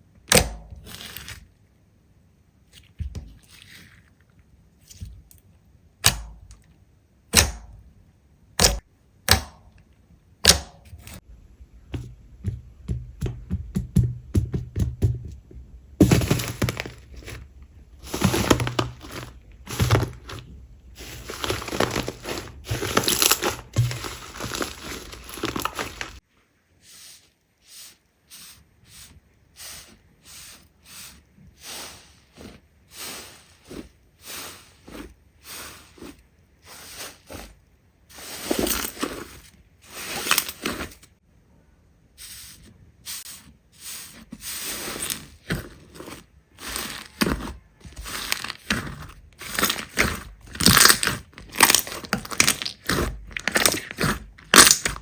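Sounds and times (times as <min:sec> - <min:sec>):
slime squishing by hand: 0:16.0 - 0:26.2, 0:44.0 - 0:55.0.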